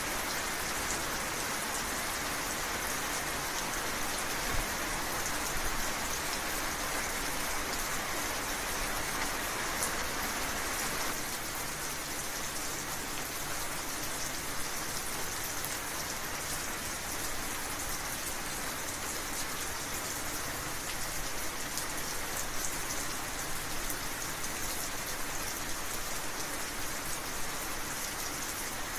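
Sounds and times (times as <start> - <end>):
rain hissing: 0.0 - 17.7.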